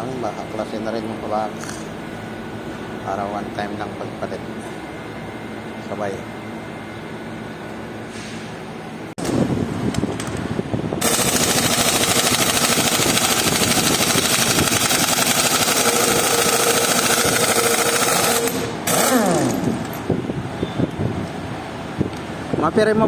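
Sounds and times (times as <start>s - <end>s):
power tool hammering rattle: 11.0s - 20.1s.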